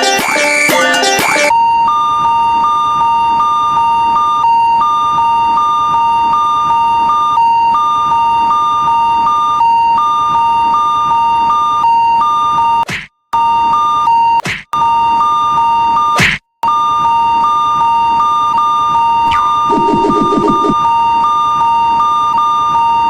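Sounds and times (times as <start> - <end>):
railroad crossing alarm tones: 16.8 - 20.8.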